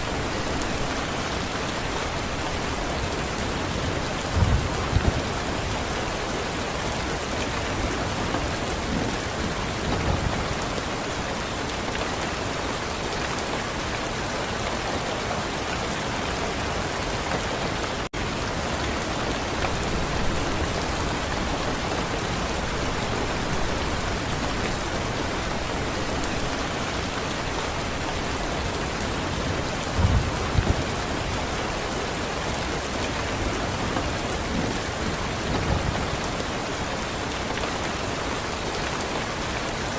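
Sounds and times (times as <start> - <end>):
dense rain falling: 0.0 - 39.9.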